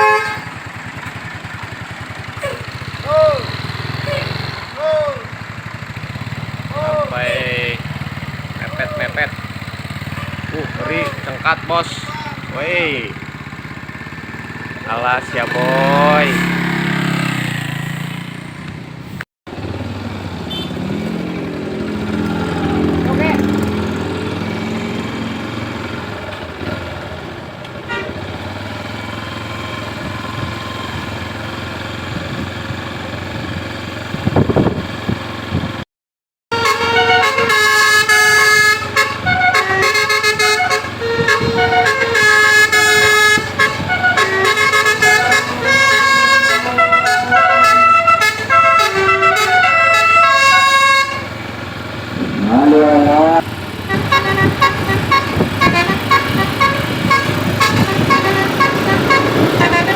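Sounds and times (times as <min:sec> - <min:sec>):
multi-tone air horn tune: 0:00.0 - 0:00.6, 0:14.9 - 0:16.5, 0:36.5 - 0:51.5, 0:52.2 - 0:59.9
vehicle running noise: 0:00.0 - 0:35.8, 0:36.5 - 0:59.9.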